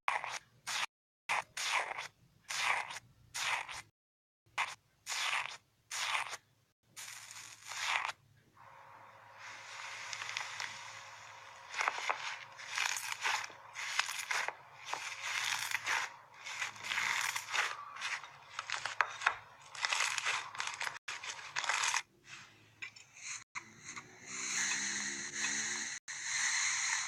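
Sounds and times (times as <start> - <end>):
slime squishing and crackling: 0.1 - 3.8, 4.6 - 6.4, 7.0 - 8.2, 10.0 - 22.1.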